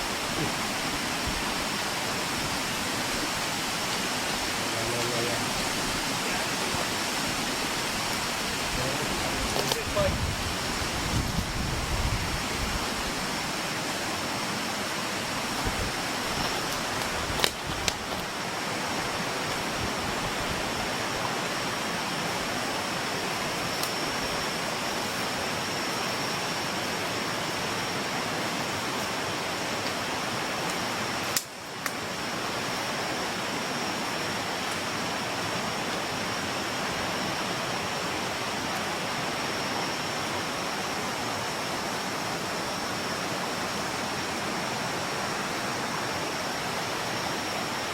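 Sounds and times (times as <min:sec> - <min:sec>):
flowing river water: 0:00.0 - 0:47.9
thin high steady tone: 0:18.0 - 0:47.9.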